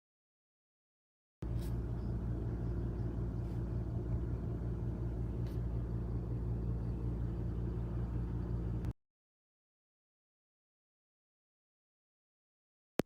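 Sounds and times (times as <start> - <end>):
low rumbling hum with flutter: 1.4 - 9.0.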